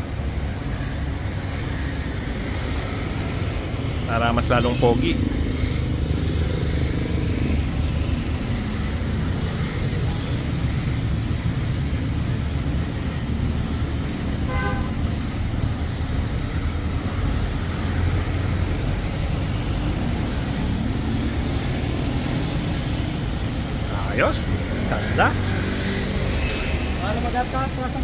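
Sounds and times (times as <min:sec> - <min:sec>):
road traffic rumble: 0:00.0 - 0:28.0
car horn toot: 0:14.5 - 0:15.0.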